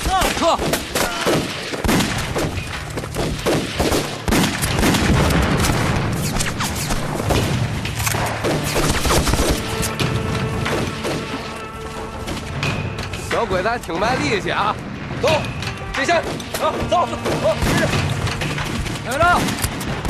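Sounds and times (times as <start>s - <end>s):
rapid gunfire: 0.0s - 9.9s, 17.2s - 20.0s
dramatic score music: 0.0s - 20.0s.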